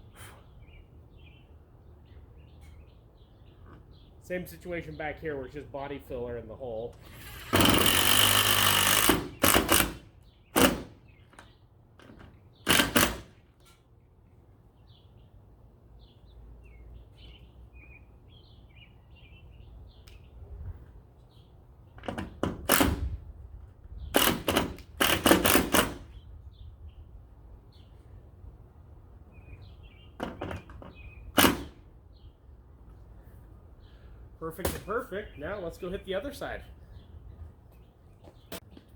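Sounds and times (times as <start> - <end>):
power driver driving screws: 7.0 - 10.0, 12.7 - 13.3, 24.1 - 26.0.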